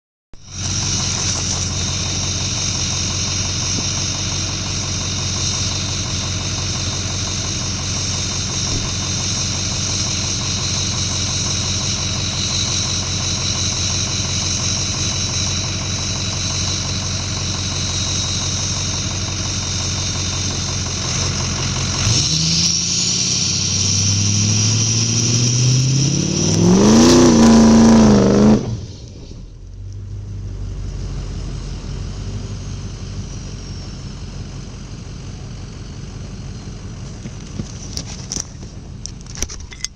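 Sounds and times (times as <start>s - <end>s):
high turbo whistle: 0.4s - 29.5s
diesel truck engine idling and revving: 0.4s - 39.9s.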